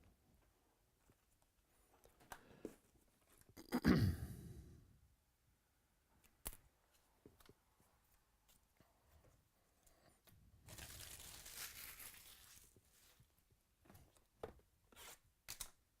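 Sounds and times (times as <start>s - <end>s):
wrapper tearing with crinkling: 10.6s - 13.2s.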